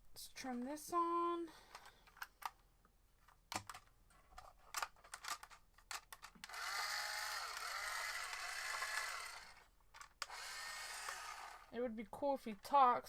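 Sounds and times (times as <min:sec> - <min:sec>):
toy car motor whirring: 0:06.4 - 0:11.7.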